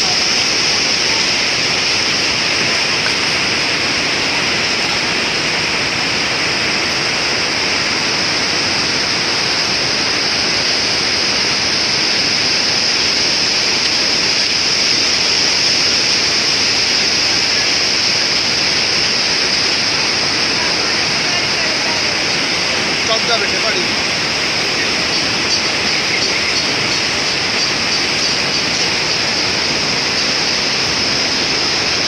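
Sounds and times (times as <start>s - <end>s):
mountain river rushing: 0.0s - 32.0s.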